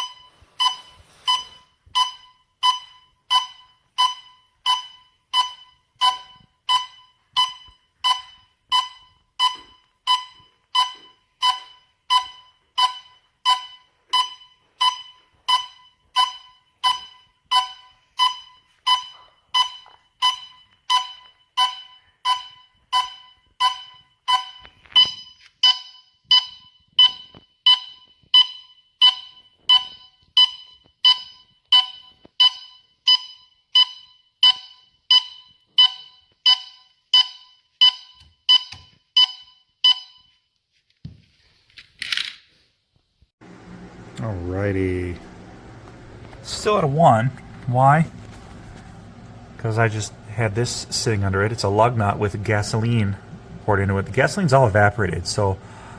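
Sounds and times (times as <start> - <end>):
alarm beeping: 0.0 - 40.4, 46.4 - 48.9.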